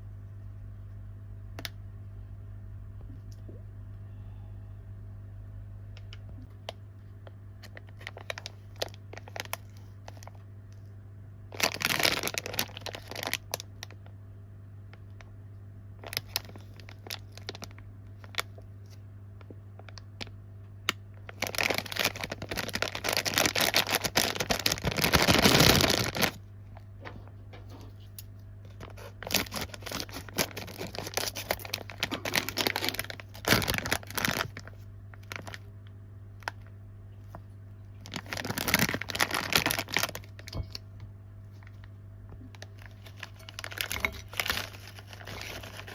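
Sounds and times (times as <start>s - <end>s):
plastic wrappers crinkling and tearing: 7.6s - 10.9s, 11.5s - 14.1s, 16.0s - 20.3s, 21.1s - 26.5s, 28.7s - 35.8s, 36.4s - 40.7s, 41.5s - 45.9s.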